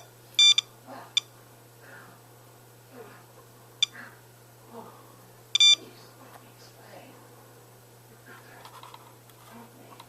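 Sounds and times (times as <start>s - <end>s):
geiger counter beeping: 0.0s - 1.3s, 5.6s - 5.8s.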